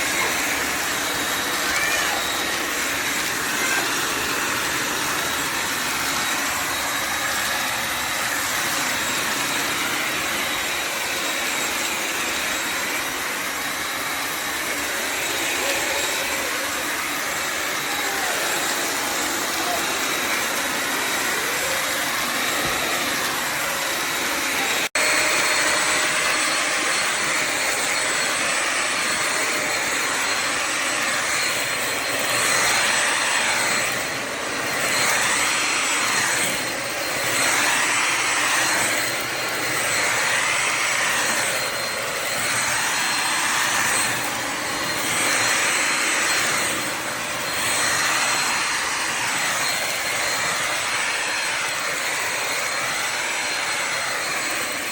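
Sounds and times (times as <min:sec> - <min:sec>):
steam mop motor whine: 0:00.0 - 0:54.9.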